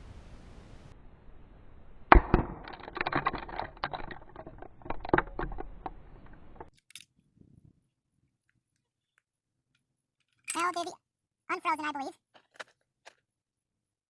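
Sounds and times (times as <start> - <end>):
rifle shot: 2.1 - 3.3
irregular clicks and knocks: 2.5 - 7.0.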